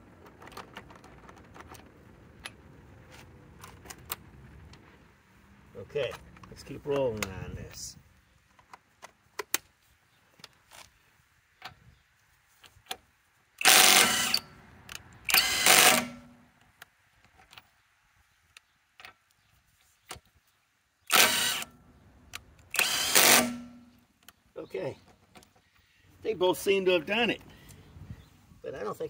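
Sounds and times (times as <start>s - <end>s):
impact wrench hammering: 15.3s - 16.4s, 22.8s - 23.9s.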